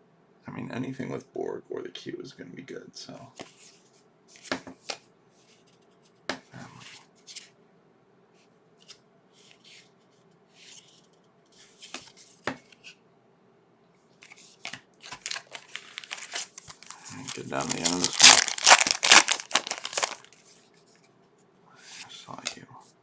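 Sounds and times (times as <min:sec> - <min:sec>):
trading cards rustling: 0:14.3 - 0:20.6.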